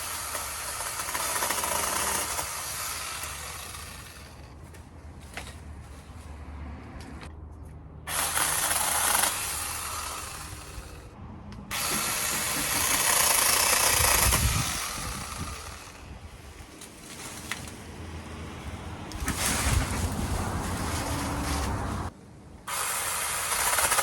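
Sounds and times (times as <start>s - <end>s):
chainsaw cutting branches: 0.0s - 4.5s, 8.1s - 17.8s, 19.1s - 22.1s, 22.7s - 24.0s.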